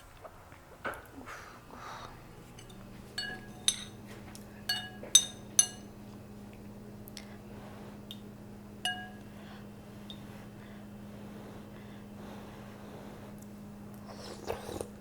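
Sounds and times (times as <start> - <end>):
spoon clinking against bowl: 2.6 - 4.0, 4.7 - 5.9, 8.8 - 9.3.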